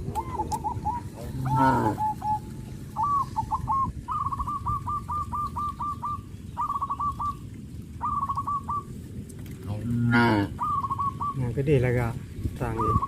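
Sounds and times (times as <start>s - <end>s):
bird calling in falling notes: 0.0s - 9.0s, 10.3s - 11.6s.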